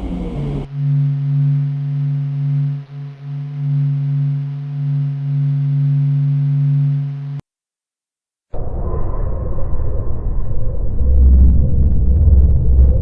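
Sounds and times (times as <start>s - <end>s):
low steady hum: 0.0s - 7.4s.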